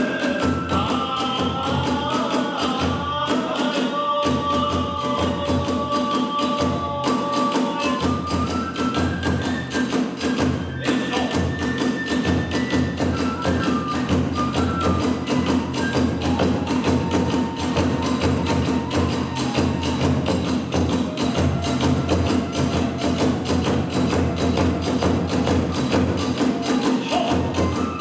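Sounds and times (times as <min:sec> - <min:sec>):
drums beating: 0:00.0 - 0:28.0
bamboo flute held notes: 0:07.7 - 0:28.0
hand cymbals: 0:13.3 - 0:28.0.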